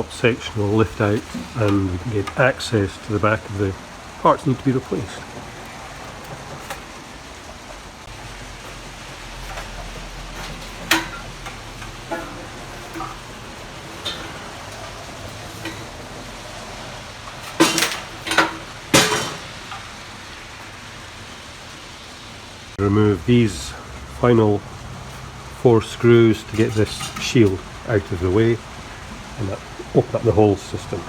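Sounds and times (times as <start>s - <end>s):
steady background hiss: 0.0s - 31.0s
loud metal clanks: 0.4s - 20.9s, 26.4s - 27.7s
metal parts clinking and knocking: 4.6s - 7.2s, 8.1s - 20.0s.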